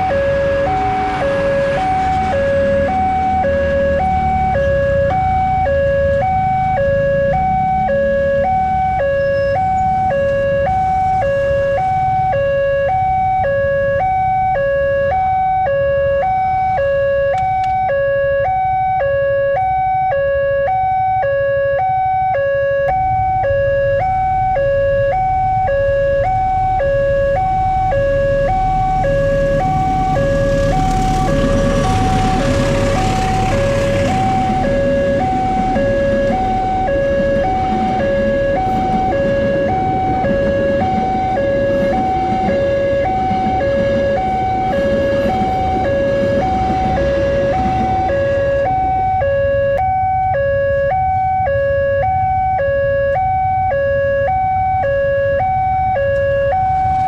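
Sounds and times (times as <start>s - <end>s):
train passing: 0.0s - 13.6s, 23.0s - 49.8s, 56.5s - 57.0s
level crossing two-tone siren: 0.0s - 57.0s.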